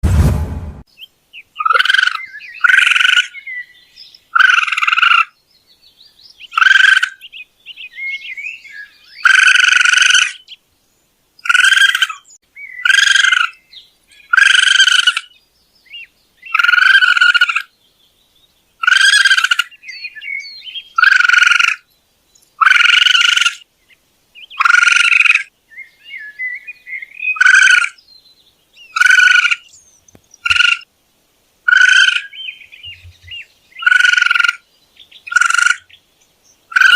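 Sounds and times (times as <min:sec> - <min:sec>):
raccoon chirps: 0:01.6 - 0:03.3, 0:06.5 - 0:07.2, 0:14.2 - 0:15.3, 0:18.8 - 0:19.8, 0:21.0 - 0:21.8, 0:27.2 - 0:28.0, 0:28.8 - 0:29.7, 0:30.4 - 0:30.8, 0:31.7 - 0:34.6, 0:35.3 - 0:35.9
raccoon high cries: 0:18.8 - 0:19.7, 0:21.0 - 0:21.8, 0:22.6 - 0:23.6, 0:27.4 - 0:28.0, 0:29.0 - 0:29.6, 0:31.7 - 0:32.3.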